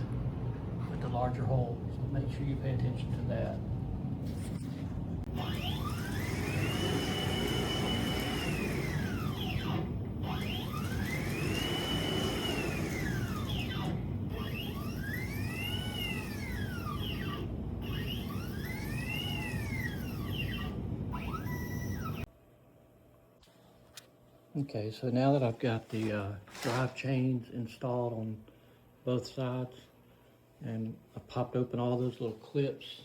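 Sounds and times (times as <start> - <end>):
electric motor whining: 5.3 - 22.3.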